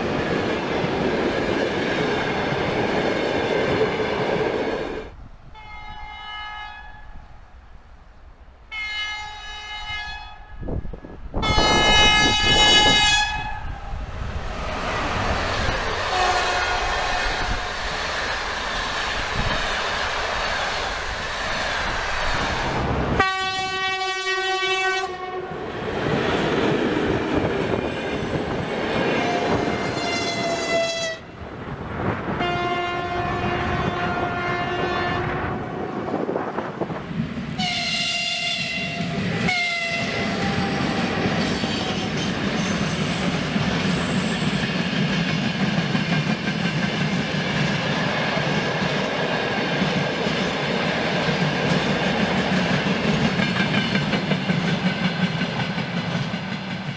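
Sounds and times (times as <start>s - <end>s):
moving train clatter: 0.0s - 5.2s, 14.2s - 23.8s, 25.5s - 32.4s, 38.6s - 56.9s
locomotive whistle blasts: 11.4s - 13.7s, 23.2s - 25.4s, 29.9s - 31.2s, 37.6s - 41.9s.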